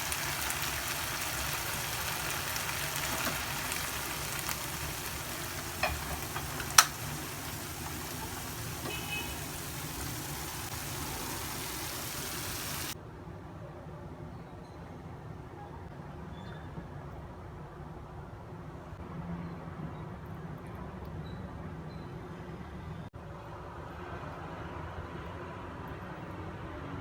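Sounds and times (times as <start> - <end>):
food sizzling in hot oil: 0.0 - 13.0.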